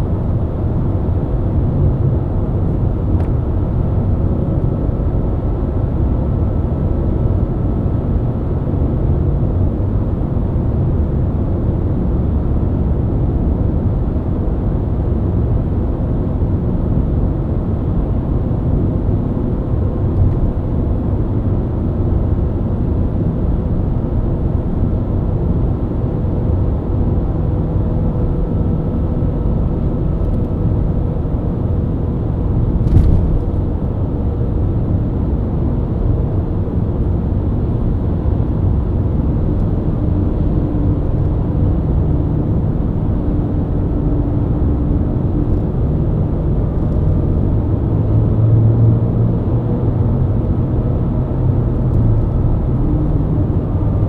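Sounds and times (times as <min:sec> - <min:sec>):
car engine cruising: 0:29.7 - 0:36.1
tyre and road rumble: 0:32.5 - 0:34.2
brief thump: 0:32.8 - 0:33.8.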